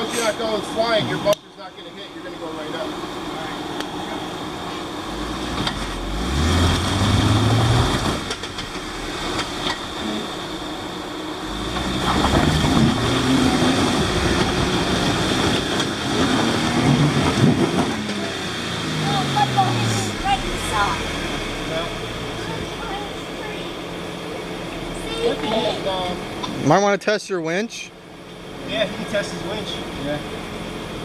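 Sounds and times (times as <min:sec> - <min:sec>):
engine revving under load: 0:00.0 - 0:26.8.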